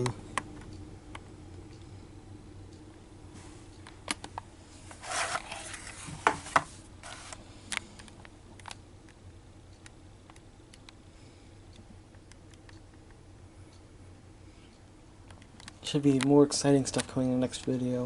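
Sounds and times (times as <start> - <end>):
plastic case scraping rustle: 5.0 - 7.3.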